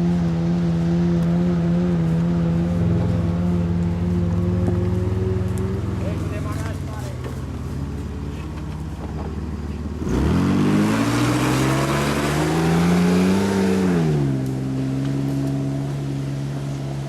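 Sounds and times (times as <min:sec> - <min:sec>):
off-road vehicle engine revving: 0:00.0 - 0:17.0.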